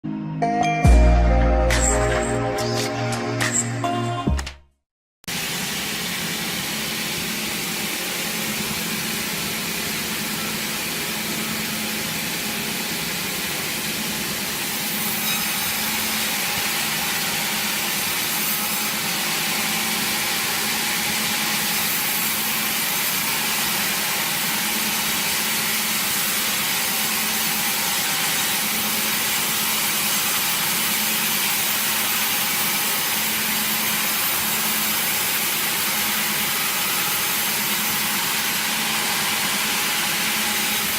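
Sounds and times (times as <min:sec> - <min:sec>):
saw hissing through timber: 0:05.3 - 0:40.9.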